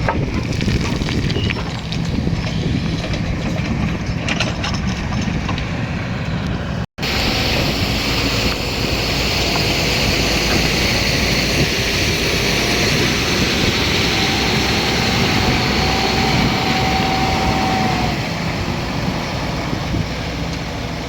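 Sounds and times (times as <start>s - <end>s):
knocks and clatter: 0.0s - 5.9s
excavator diesel engine running: 1.6s - 21.0s
high hiss: 7.0s - 15.0s.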